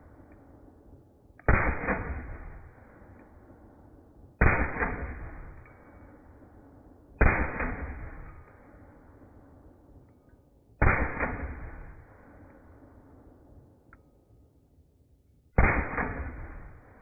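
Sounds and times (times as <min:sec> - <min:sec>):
pistol shots: 0:01.4 - 0:03.4, 0:04.4 - 0:06.0, 0:07.2 - 0:08.6, 0:10.8 - 0:12.3, 0:15.6 - 0:17.0.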